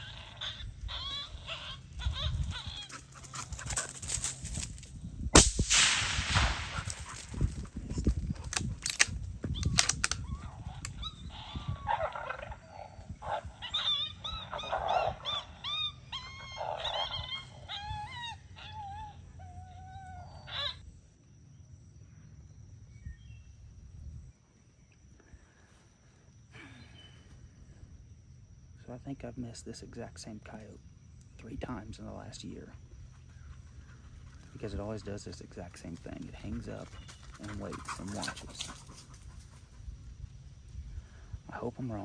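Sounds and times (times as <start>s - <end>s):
dog whining: 0.0s - 3.9s, 13.5s - 20.8s
yelps and yips: 0.0s - 4.3s, 9.8s - 20.8s
rifle shot: 5.4s - 7.4s.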